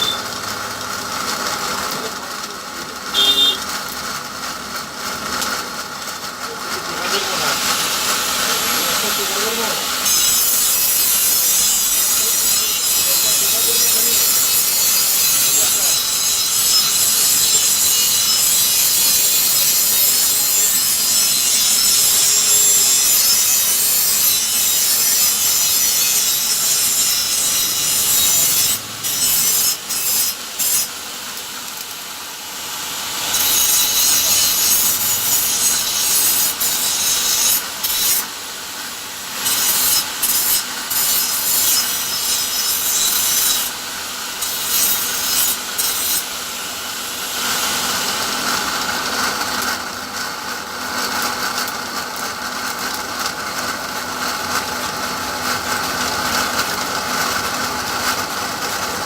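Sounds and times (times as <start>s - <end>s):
tool grinding workpiece: 7.0s - 31.9s, 32.6s - 38.4s, 39.3s - 48.8s.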